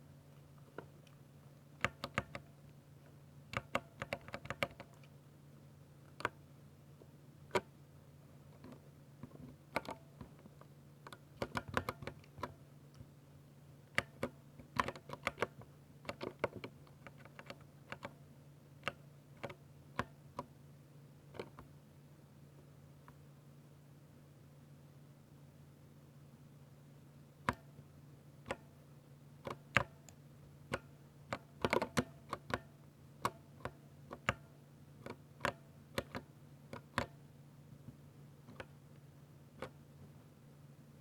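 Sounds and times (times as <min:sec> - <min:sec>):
mechanical keyboard typing: 0:01.8 - 0:02.5, 0:03.5 - 0:05.1, 0:11.1 - 0:12.6, 0:13.9 - 0:18.2, 0:29.4 - 0:34.4, 0:35.0 - 0:37.2.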